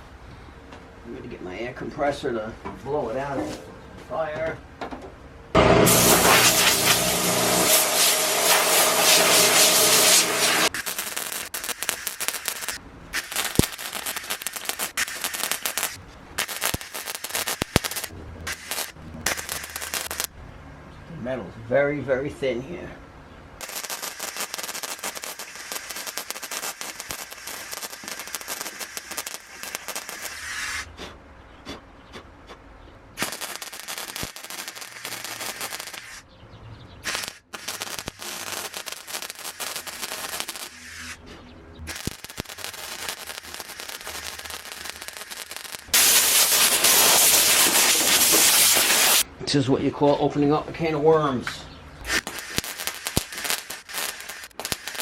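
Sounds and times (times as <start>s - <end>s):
welder arc crackling: 5.6s - 20.4s, 23.6s - 30.8s, 33.2s - 36.2s, 37.0s - 41.2s, 41.9s - 49.3s, 52.1s - 55.0s
compressed air hissing: 5.8s - 11.0s, 11.6s - 20.3s, 41.9s - 49.2s, 52.1s - 55.0s.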